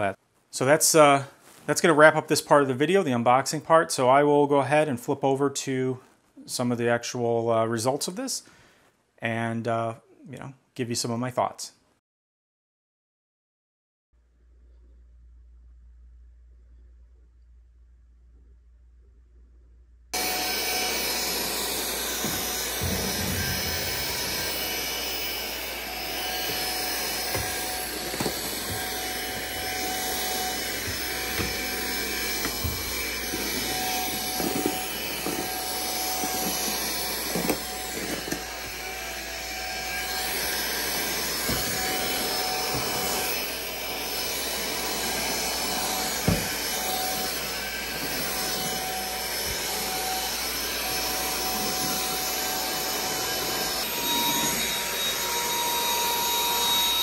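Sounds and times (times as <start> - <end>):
vacuum cleaner motor running: 20.2 - 57.0.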